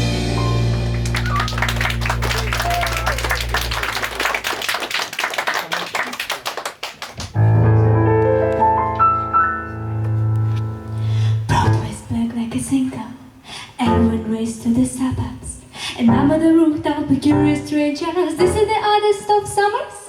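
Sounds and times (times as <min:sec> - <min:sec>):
audience clapping: 0:00.7 - 0:07.4.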